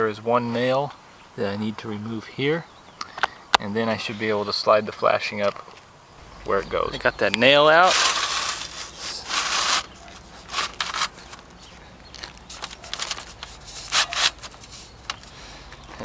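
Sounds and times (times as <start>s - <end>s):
metal flashing scraping shingles: 6.7s - 15.5s.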